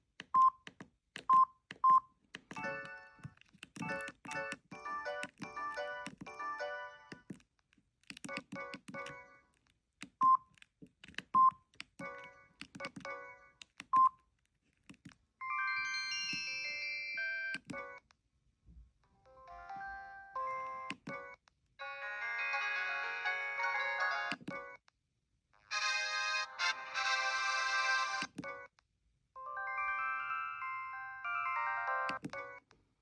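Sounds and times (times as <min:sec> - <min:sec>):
mobile phone ringtone melodies: 0:03.9 - 0:07.2, 0:15.4 - 0:18.0, 0:19.3 - 0:24.7, 0:25.7 - 0:28.3, 0:29.4 - 0:32.6.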